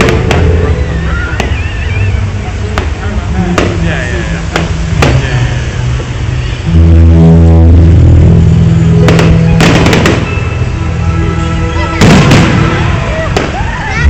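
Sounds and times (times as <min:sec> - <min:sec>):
fireworks bangs and crackling: 0:00.0 - 0:06.5, 0:09.0 - 0:10.7, 0:11.8 - 0:14.0
loud music with heavy bass: 0:03.4 - 0:14.0.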